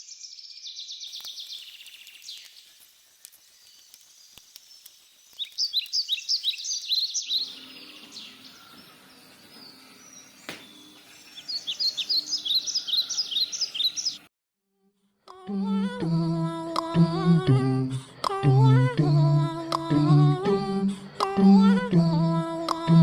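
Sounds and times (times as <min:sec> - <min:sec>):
birds chirping: 0:00.0 - 0:14.3.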